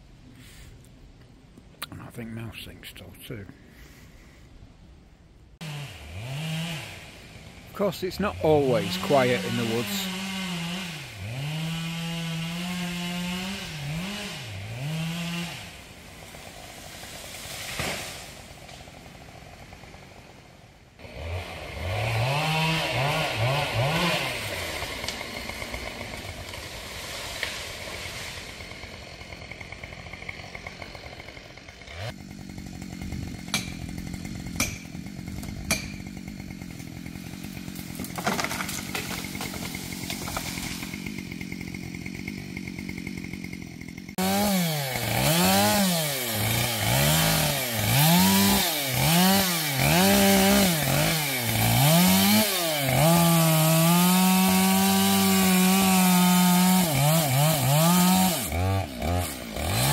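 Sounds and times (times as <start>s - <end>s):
chainsaw engine revving: 5.6s - 59.9s
sharp cracks: 37.6s - 41.1s.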